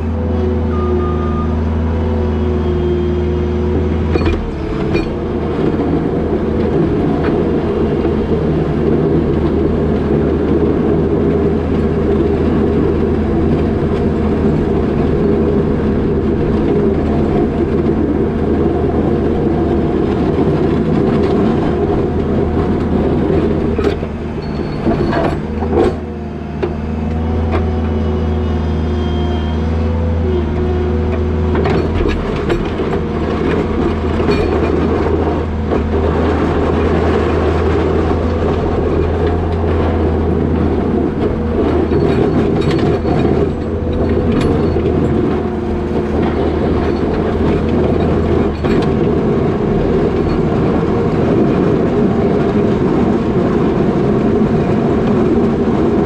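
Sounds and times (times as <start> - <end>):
deep low drone: 0.0 - 56.0
diesel engine running: 0.0 - 56.0
machine rattling and knocking: 31.6 - 56.0.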